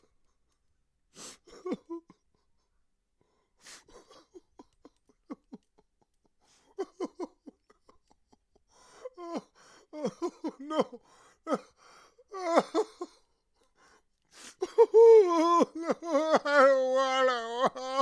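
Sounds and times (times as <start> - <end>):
man crying: 1.5 - 2.2, 8.9 - 11.7, 12.3 - 13.2, 14.6 - 18.0.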